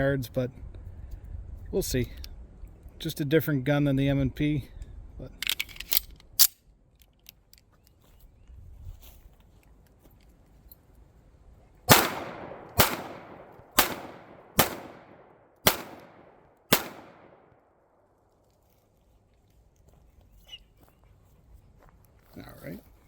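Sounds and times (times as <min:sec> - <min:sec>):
pistol shots with echo: 0:11.9 - 0:17.6.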